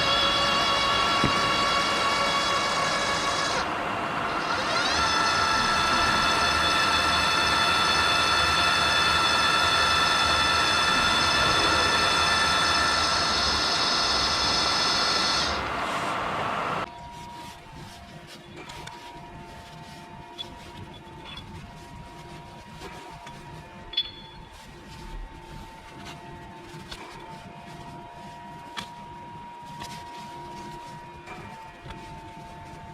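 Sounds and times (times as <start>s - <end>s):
machine tool motor whining: 0.0s - 23.8s.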